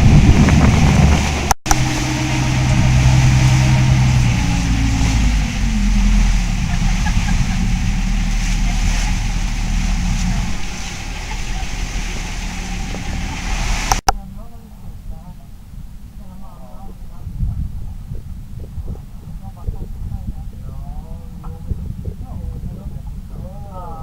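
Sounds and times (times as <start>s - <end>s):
boat engine running: 0.0s - 24.0s.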